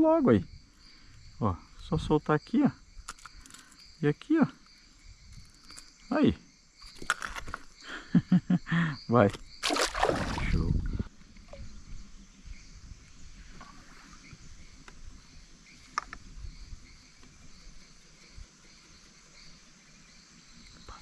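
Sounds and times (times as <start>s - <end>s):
forest insects chorus: 0.0s - 21.0s
water and kayak handling noise: 9.3s - 10.7s.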